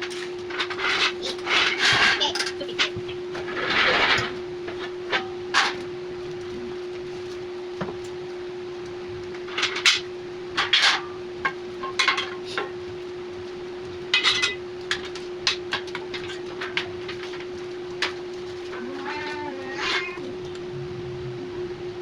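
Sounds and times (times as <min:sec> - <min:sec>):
metal rack parts clanking: 0:00.0 - 0:04.4, 0:09.5 - 0:11.2, 0:11.8 - 0:12.7, 0:14.1 - 0:20.2
steady hum: 0:00.0 - 0:22.0.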